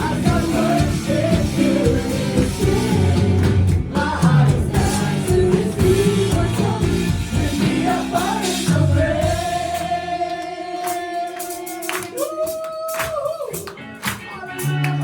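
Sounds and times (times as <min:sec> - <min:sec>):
choir singing: 0:00.0 - 0:12.0
gospel band playing: 0:00.0 - 0:15.0.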